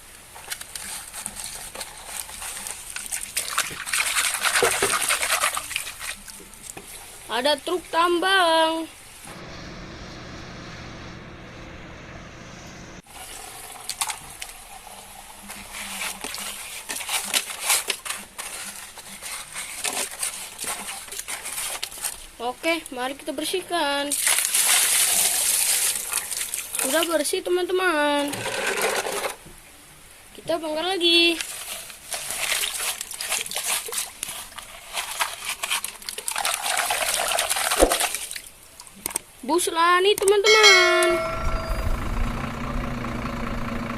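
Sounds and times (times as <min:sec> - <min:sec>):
wet sloshing: 0:00.4 - 0:07.3, 0:31.4 - 0:39.2
toy splashing in water: 0:02.2 - 0:06.8, 0:32.2 - 0:39.2.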